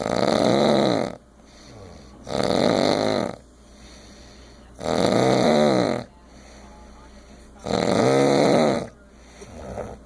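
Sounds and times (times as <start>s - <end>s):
rattling snore: 0.0s - 3.4s, 4.8s - 6.1s, 7.6s - 10.0s
quiet breathing: 1.3s - 2.3s, 3.4s - 4.8s, 6.0s - 7.7s, 8.6s - 10.0s.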